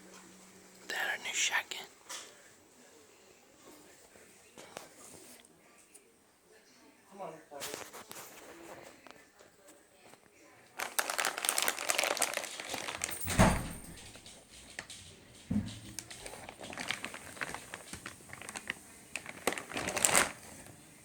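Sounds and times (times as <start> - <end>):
packaging crinkling: 10.8 - 13.6, 15.9 - 20.7
heavy thump: 13.2 - 14.1, 15.5 - 16.0.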